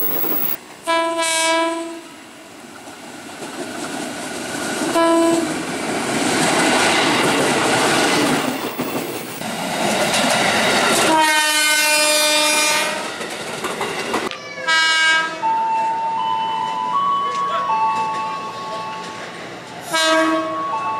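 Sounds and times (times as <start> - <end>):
train horn blast: 0.8 - 2.2, 4.9 - 5.5, 11.0 - 13.0, 14.7 - 15.4, 19.8 - 20.8
train wheels clattering on rails: 2.8 - 14.3.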